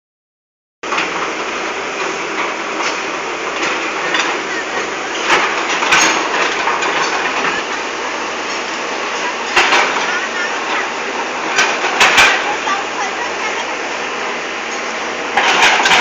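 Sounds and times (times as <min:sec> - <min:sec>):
roadworks din: 0:00.8 - 0:16.0
sharp knocks and clanks: 0:02.4 - 0:07.8, 0:08.4 - 0:12.8, 0:14.7 - 0:16.0.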